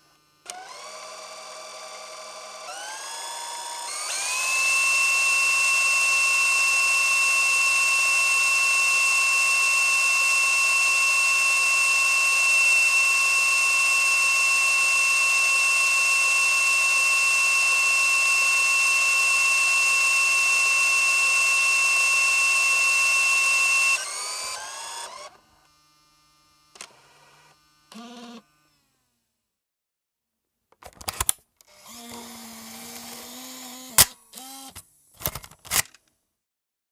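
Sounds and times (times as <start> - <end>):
brief mechanical whirr: 30.9 - 36.0.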